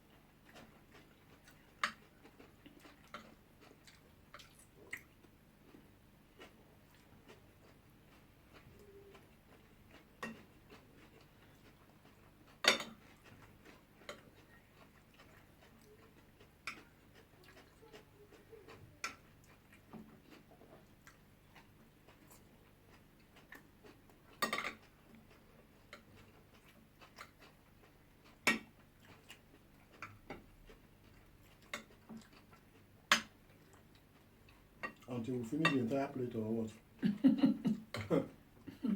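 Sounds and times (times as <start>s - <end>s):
spoons clinking against plates: 12.6s - 13.0s.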